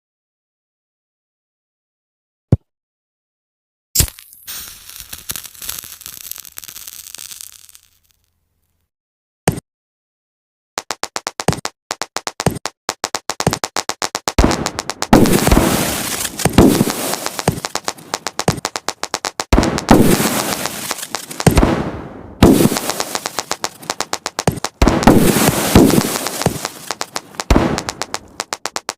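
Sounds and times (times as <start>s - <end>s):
firework sharp cracks: 4.0s - 8.2s, 10.8s - 28.9s
firework bangs with crackling: 4.5s - 8.2s, 12.4s - 28.9s.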